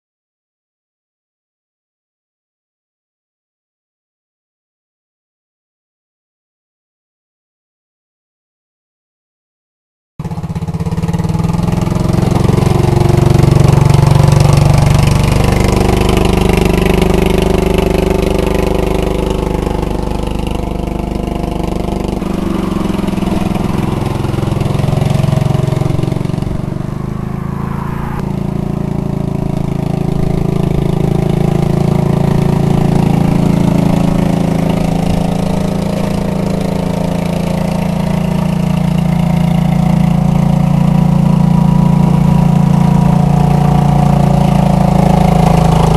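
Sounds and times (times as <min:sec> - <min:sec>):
lawn tractor engine running: 0:10.2 - 0:27.2, 0:28.3 - 0:45.9.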